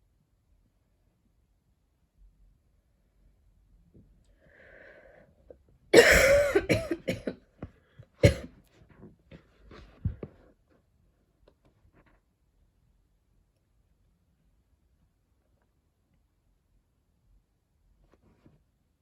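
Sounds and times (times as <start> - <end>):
breath in: 4.4 - 5.3
woman coughing: 6.0 - 7.4, 8.2 - 8.5.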